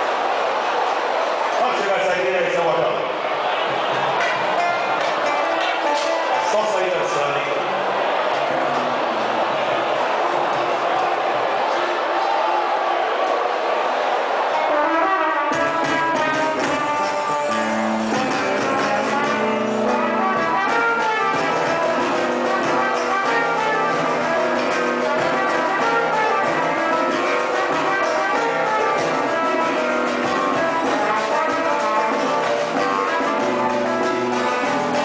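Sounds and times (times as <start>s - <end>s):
samba-rock music with horns: 0.0s - 35.0s.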